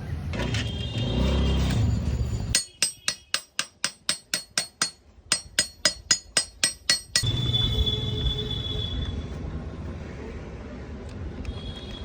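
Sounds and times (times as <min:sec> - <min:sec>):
rapid metallic taps: 0:02.6 - 0:07.3.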